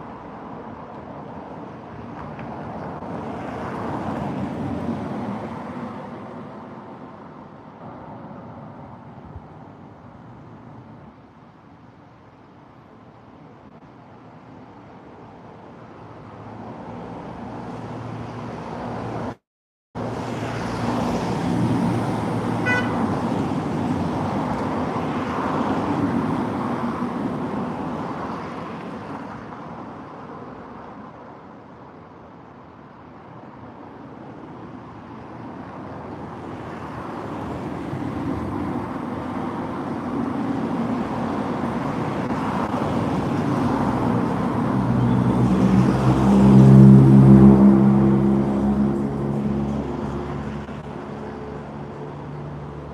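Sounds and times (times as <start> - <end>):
motor vehicles passing: 20.0 - 26.4, 40.1 - 52.9.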